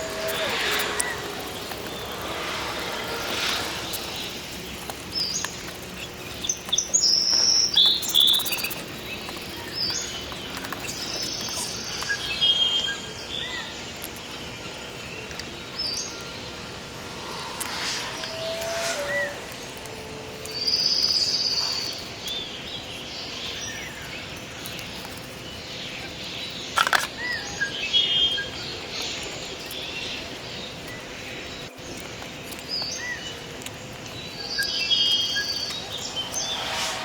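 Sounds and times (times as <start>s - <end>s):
small birds chirping: 0.0s - 22.4s
outdoor background hiss: 15.6s - 21.6s.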